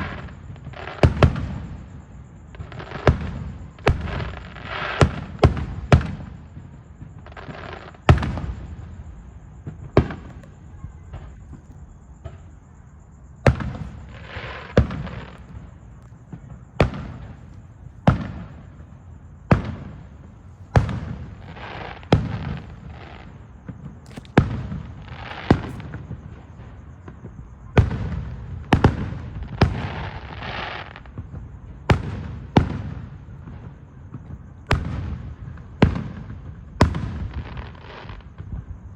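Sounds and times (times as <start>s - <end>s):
fireworks crackling: 0.0s - 12.7s, 13.4s - 38.6s
fireworks booming: 0.0s - 38.9s.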